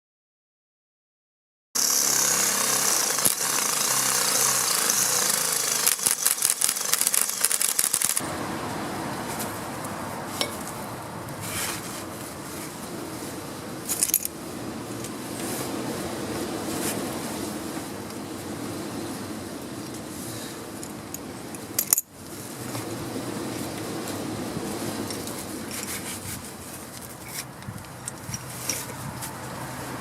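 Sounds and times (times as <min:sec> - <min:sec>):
impact wrench whirring and hammering: 0:01.8 - 0:08.2.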